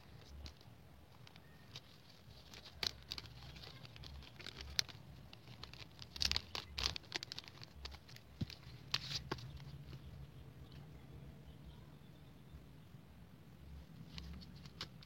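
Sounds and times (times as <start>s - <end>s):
plastic bags rustling: 0.0s - 9.8s.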